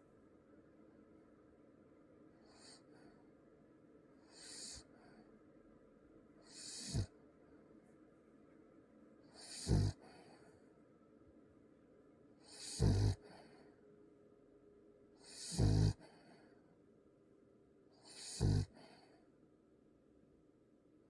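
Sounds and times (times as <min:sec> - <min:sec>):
pet snoring: 0:02.4 - 0:02.9, 0:04.2 - 0:05.0, 0:06.4 - 0:07.1, 0:09.3 - 0:10.4, 0:12.4 - 0:13.6, 0:15.2 - 0:16.4, 0:18.0 - 0:19.1
short deep snort: 0:15.3 - 0:16.0, 0:18.1 - 0:18.7.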